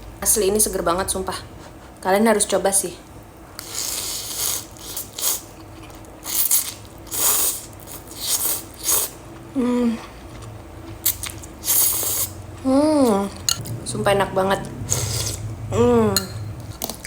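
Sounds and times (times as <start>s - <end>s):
person slurping noodles: 3.6s - 5.4s, 11.4s - 12.4s
closed-mouth hum: 9.2s - 17.0s.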